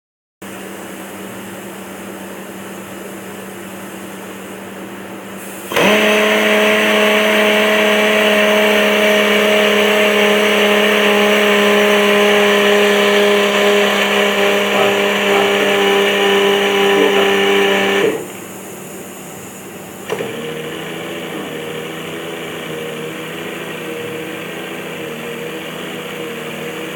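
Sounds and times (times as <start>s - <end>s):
pneumatic drill running: 5.4s - 26.9s.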